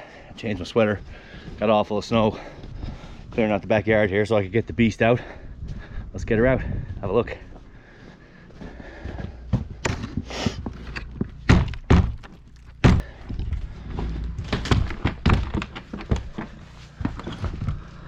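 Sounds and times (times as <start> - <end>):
knocks and thuds of objects moved: 9.2 - 18.0.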